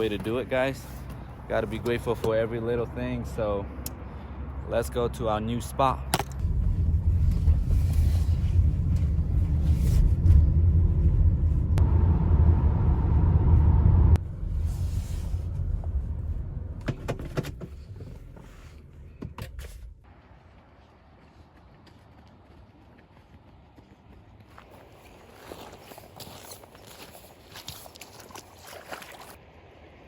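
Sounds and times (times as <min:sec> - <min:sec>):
car rumbling while moving: 0:00.0 - 0:20.0.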